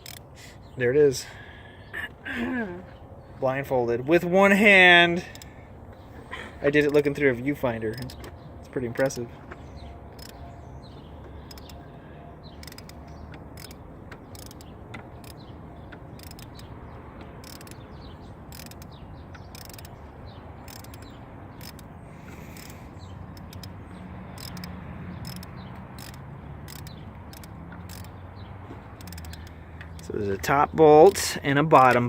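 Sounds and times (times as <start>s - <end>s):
socket ratchet clicking: 0.0s - 0.3s, 5.3s - 5.5s, 7.9s - 8.3s, 10.1s - 10.4s, 11.4s - 11.8s, 12.5s - 20.0s, 20.6s - 28.2s, 28.8s - 30.1s.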